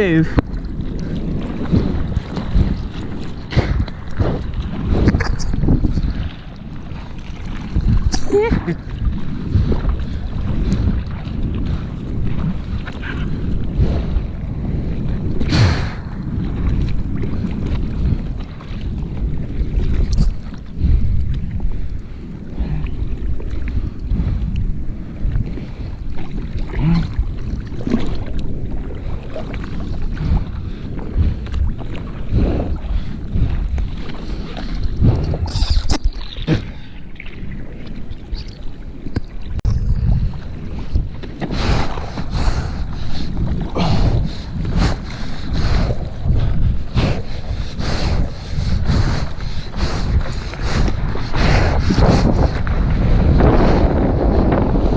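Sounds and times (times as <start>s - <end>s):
sea water sloshing and splashing: 0.0s - 54.9s
wind buffeting microphone: 0.0s - 54.9s.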